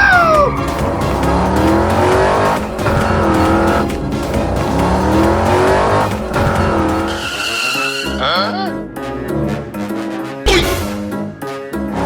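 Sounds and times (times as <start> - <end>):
background music: 0.0 - 12.0
car engine revving: 0.0 - 12.0.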